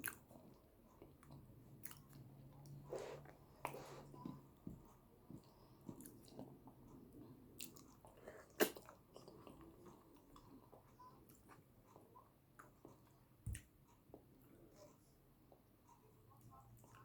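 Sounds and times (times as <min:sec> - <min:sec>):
chewing and wet mouth sounds: 0:00.0 - 0:14.5.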